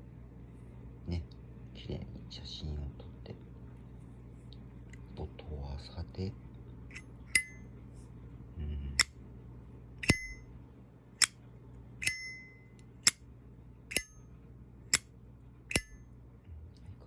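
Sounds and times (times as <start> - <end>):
metallic ringing ping: 6.9 - 7.7, 10.0 - 10.5, 12.0 - 12.8, 13.9 - 14.3, 15.7 - 16.1
lighter lid clicking open and shut: 10.0 - 10.4, 12.0 - 12.3, 13.9 - 14.1, 15.7 - 16.0.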